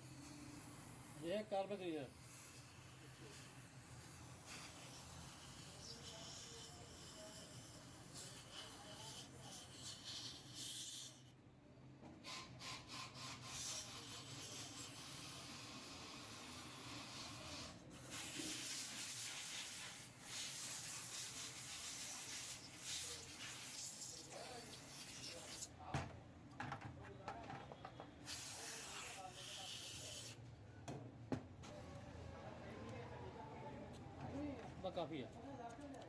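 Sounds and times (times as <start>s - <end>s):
hissing rubbing cleaner spray: 15.9s - 25.6s, 28.2s - 30.4s.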